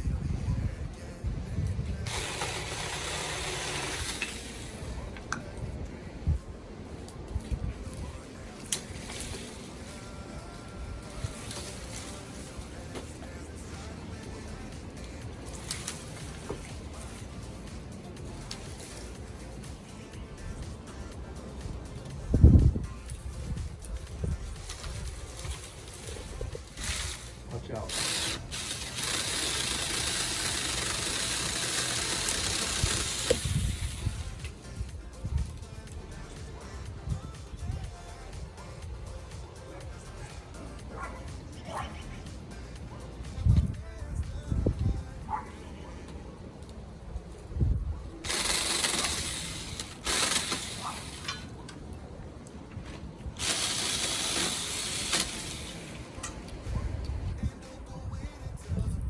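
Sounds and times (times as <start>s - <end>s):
mini chainsaw cutting branch: 2.1s - 5.5s, 8.6s - 10.3s, 11.0s - 14.0s, 15.0s - 20.7s, 24.3s - 34.6s, 48.2s - 51.6s, 53.4s - 56.3s.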